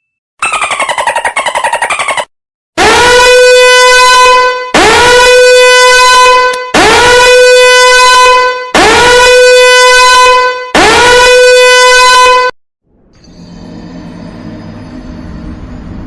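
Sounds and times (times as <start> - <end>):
loud horn blasts: 2.8 - 12.6.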